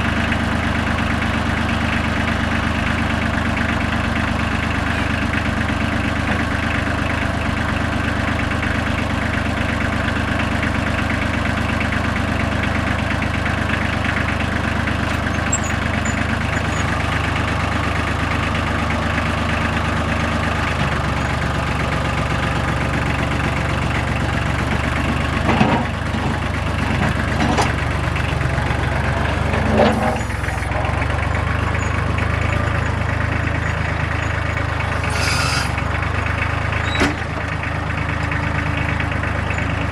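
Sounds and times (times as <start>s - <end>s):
tractor engine running: 0.0s - 39.9s
short clunks: 36.8s - 37.6s.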